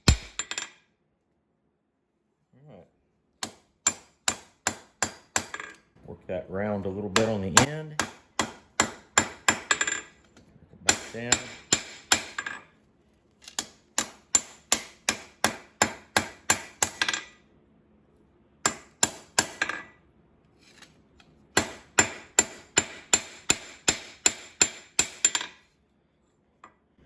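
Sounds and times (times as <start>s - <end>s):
hammer striking steel on anvil: 0.0s - 0.7s, 3.4s - 5.8s, 7.2s - 10.0s, 10.9s - 12.6s, 13.6s - 17.3s, 18.7s - 19.9s, 21.6s - 25.6s.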